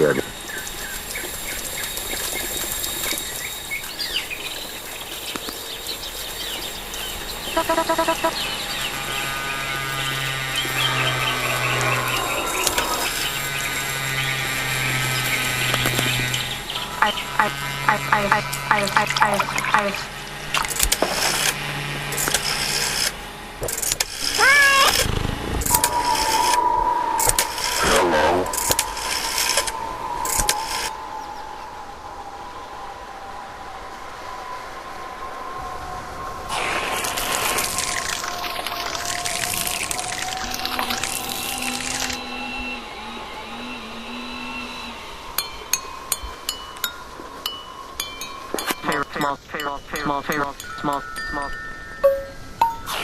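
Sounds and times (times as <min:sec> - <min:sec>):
bird-like chirping: 0:00.0 - 0:20.0
low steady hum: 0:00.0 - 0:33.4, 0:36.4 - 0:53.0
noisy background: 0:00.0 - 0:33.8
wavering pitched sound: 0:06.4 - 0:20.5, 0:24.3 - 0:32.5, 0:36.4 - 0:53.0
steady tone: 0:06.7 - 0:20.5, 0:24.3 - 0:32.9, 0:38.0 - 0:53.0
warbling pitched sound: 0:07.4 - 0:08.4, 0:16.9 - 0:20.2, 0:24.3 - 0:32.0, 0:36.5 - 0:47.1.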